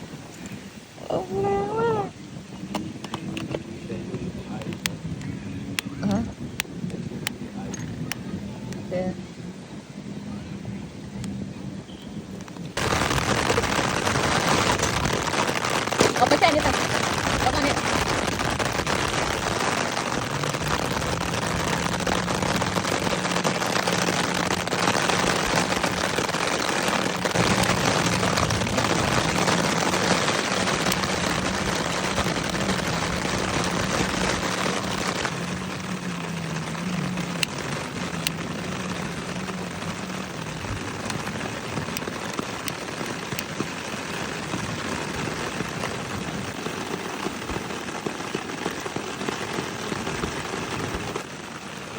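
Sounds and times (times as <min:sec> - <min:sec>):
deep-frying sizzle with pops: 0:11.9 - 0:48.5.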